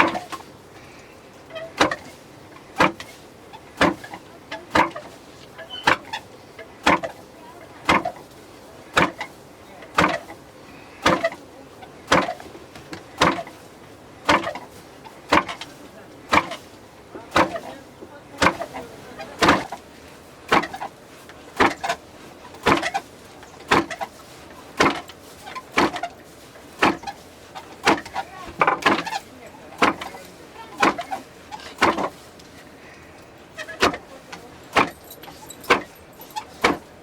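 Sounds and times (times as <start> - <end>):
grain mill knocking: 0.0 - 0.5, 1.5 - 32.7, 33.6 - 37.0.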